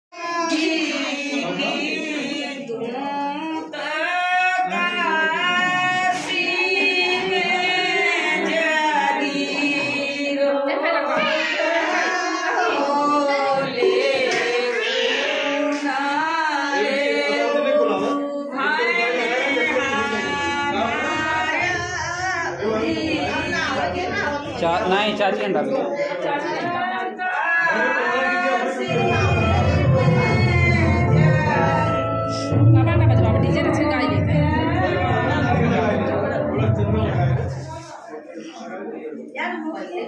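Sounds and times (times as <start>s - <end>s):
person singing a song: 26.5s - 37.1s.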